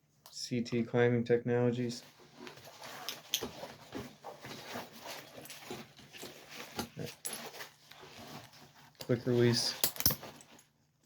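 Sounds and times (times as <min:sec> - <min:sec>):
metal buckles clicking: 0:09.8 - 0:10.6.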